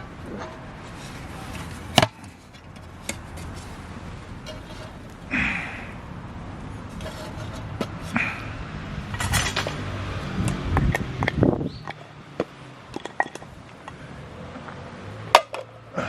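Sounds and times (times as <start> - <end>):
steady low background noise: 0.0 - 16.0
metal cookware clinking: 3.1 - 5.2, 9.1 - 9.9.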